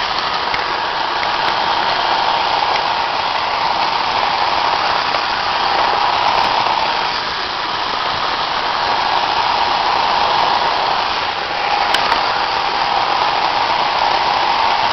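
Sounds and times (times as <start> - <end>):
robot vacuum whirring: 0.0 - 14.9.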